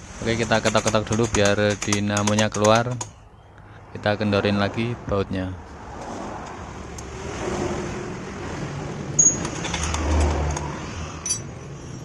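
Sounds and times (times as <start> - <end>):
metallic clicks of hand tools: 0.4 - 3.2, 9.2 - 11.5.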